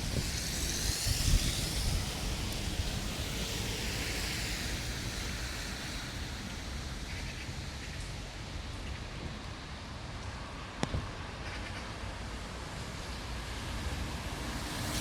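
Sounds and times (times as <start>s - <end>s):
wind buffeting microphone: 0.0s - 3.8s.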